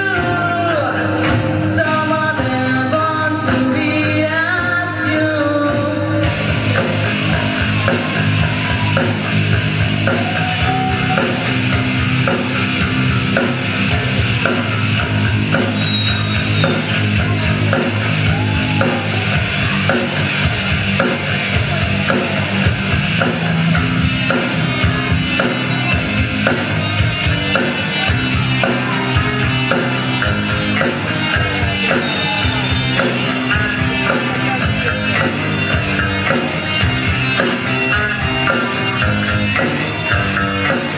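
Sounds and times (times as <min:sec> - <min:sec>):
electric guitar: 0:00.0 - 0:40.9
drum kit steady beat: 0:05.7 - 0:40.9.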